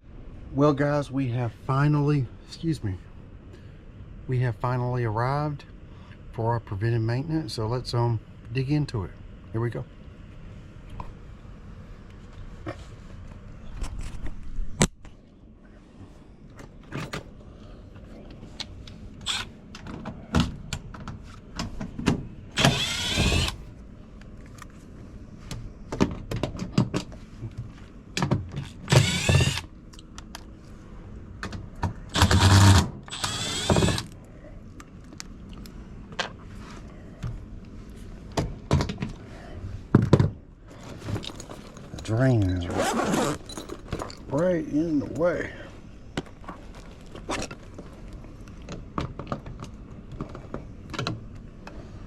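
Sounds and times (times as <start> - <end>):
small motor whirring: 19.2 - 19.5, 22.6 - 23.6, 28.8 - 29.7, 32.1 - 34.1.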